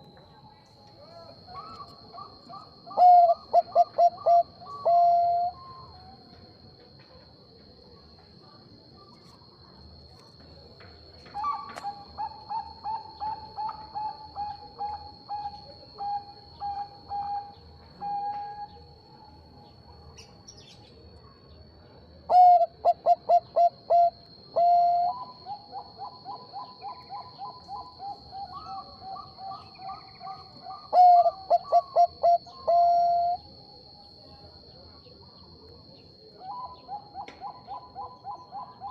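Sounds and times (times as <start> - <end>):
faint high-pitched whine: 0.0 - 38.9
dove cooing: 1.4 - 6.0, 11.4 - 18.8, 22.3 - 33.4, 36.4 - 38.9.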